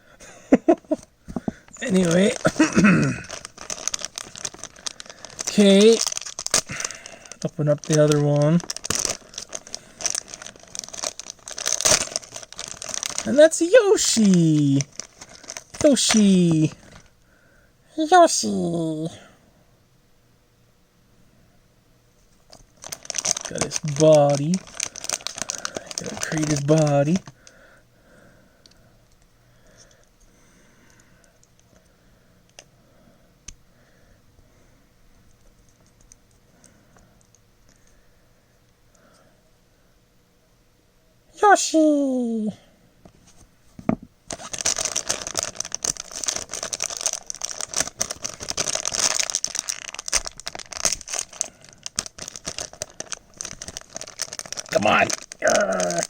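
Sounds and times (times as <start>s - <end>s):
plastic packet crinkling and tearing: 1.7s - 17.2s, 22.4s - 27.6s, 44.3s - 56.0s.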